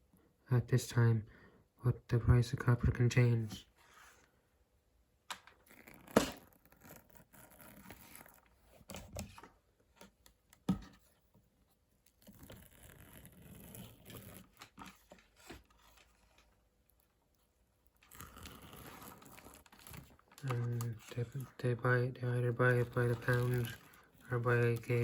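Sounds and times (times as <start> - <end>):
wire and insulation rustling: 12.0 - 25.0.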